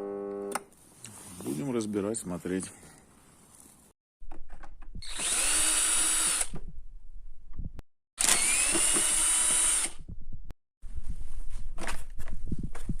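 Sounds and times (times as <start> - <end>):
electric screwdriver running: 5.0 - 6.5, 8.2 - 10.0.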